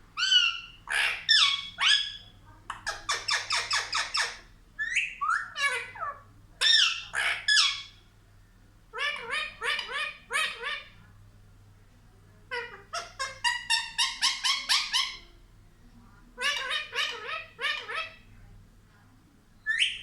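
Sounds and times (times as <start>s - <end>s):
parrot squawking: 0.2s - 8.0s, 8.9s - 11.0s, 12.5s - 15.3s, 16.4s - 18.2s, 19.7s - 20.0s.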